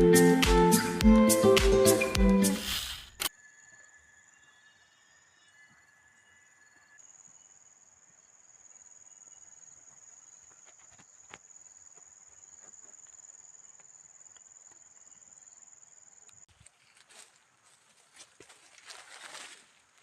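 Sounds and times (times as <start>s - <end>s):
high-pitched insect drone: 2.4s - 11.4s.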